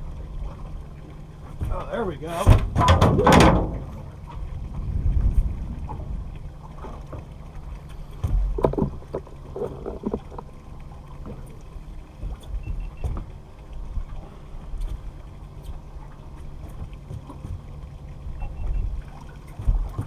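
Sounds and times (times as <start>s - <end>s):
water noise: 0.0s - 20.0s
wind noise on microphone: 4.5s - 6.4s.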